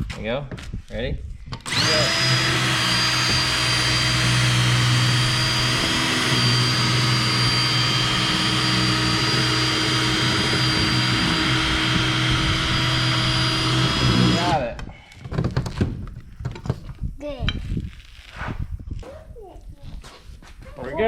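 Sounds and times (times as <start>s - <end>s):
electric drill cutting sheet metal: 1.6s - 14.7s.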